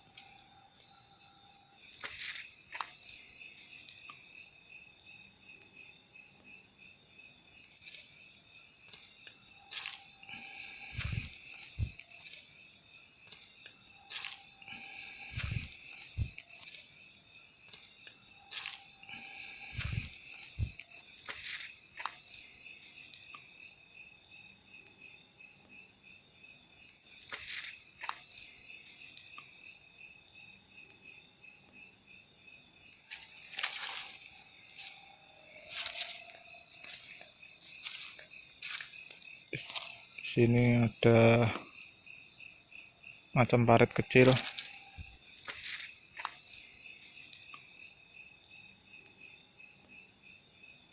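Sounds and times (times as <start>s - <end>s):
crickets and insects trilling: 0.0s - 50.9s
footsteps crunching: 8.8s - 12.5s, 13.2s - 16.9s, 17.6s - 22.2s, 27.3s - 28.2s, 33.1s - 40.1s, 44.2s - 46.4s.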